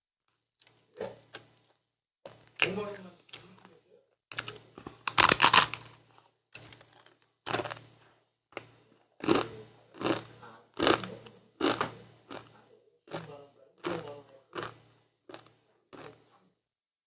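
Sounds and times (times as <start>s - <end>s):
person chewing crunchy snacks: 4.3s - 6.0s, 6.6s - 8.0s, 8.6s - 16.3s.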